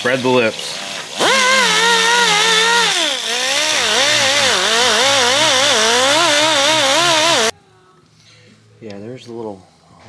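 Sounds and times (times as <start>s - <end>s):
electric grinder scuffing rubber: 1.1s - 7.5s.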